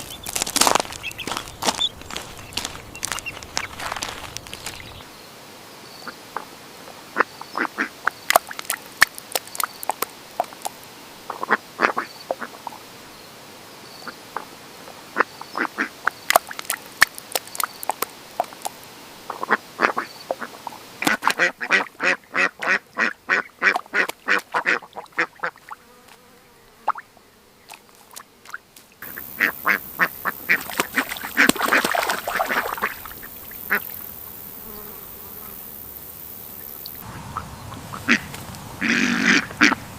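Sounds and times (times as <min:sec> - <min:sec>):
ducks quacking: 0:00.0 - 0:05.1, 0:11.3 - 0:12.6, 0:19.3 - 0:25.7, 0:29.0 - 0:34.8, 0:36.8 - 0:39.9.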